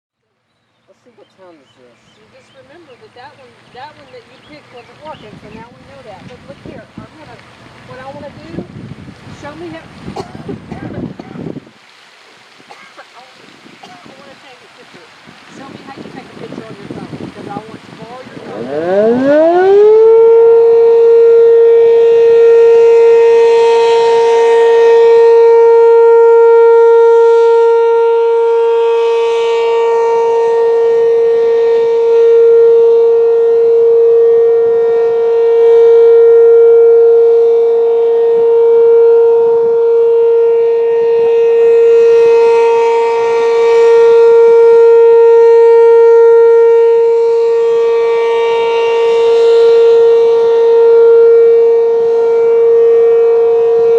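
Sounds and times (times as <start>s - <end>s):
warning siren steady tone: 15.6s - 53.9s.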